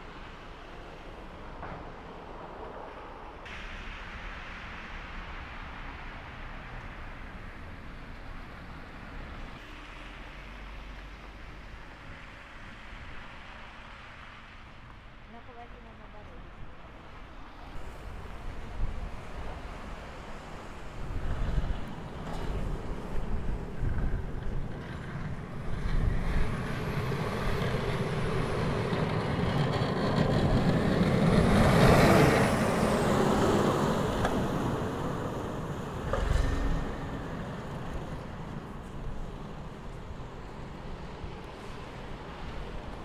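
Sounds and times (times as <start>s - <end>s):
vehicle passing on snowy street: 0.0s - 43.0s.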